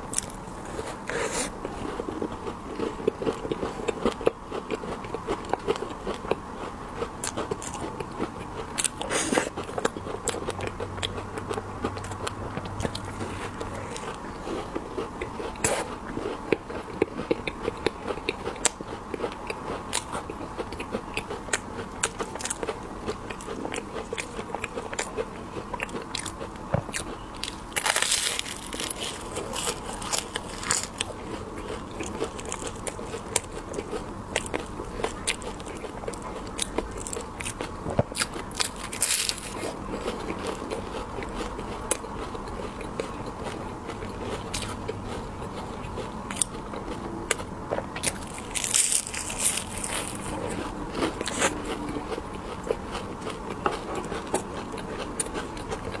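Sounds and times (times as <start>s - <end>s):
biting and chewing hard candy: 0.0s - 56.0s
candy coating crackling: 27.1s - 36.0s, 38.3s - 40.6s, 48.1s - 50.8s.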